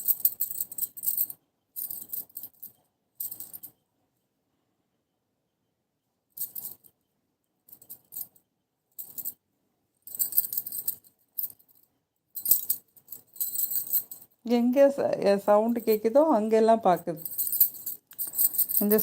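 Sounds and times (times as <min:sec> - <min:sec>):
metal jingle shaken: 0:00.0 - 0:03.7, 0:12.4 - 0:14.4, 0:15.6 - 0:19.0.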